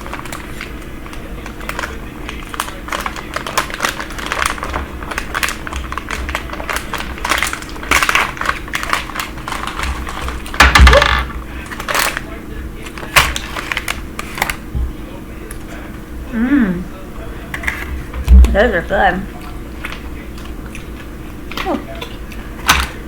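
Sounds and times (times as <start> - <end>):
chewing crunchy snack: 0.0 - 10.6, 19.3 - 23.0.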